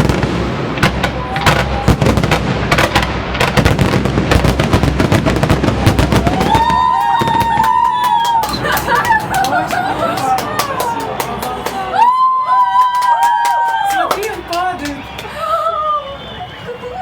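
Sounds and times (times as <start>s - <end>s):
fireworks bangs and crackling: 0.0s - 11.7s.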